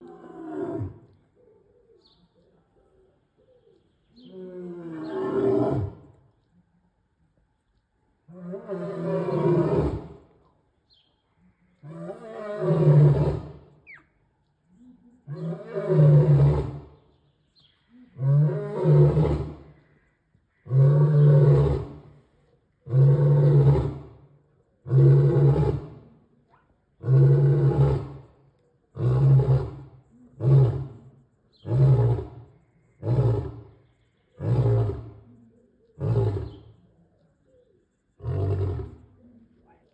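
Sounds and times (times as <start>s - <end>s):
lion roaring: 24.8s - 25.9s, 27.0s - 28.2s, 29.0s - 31.0s, 31.6s - 32.4s, 34.4s - 35.2s, 36.0s - 36.6s, 38.2s - 39.1s.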